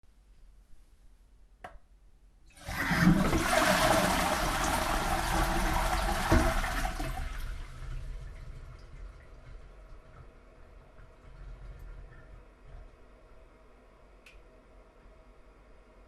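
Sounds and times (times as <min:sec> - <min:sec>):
toilet flushing water rush: 0:02.5 - 0:13.0.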